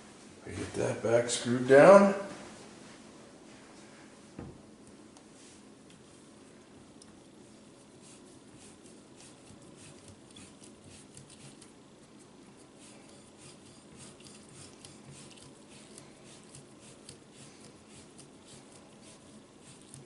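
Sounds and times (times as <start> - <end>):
hands scratching faucet spout: 8.1 - 11.7, 12.6 - 20.0.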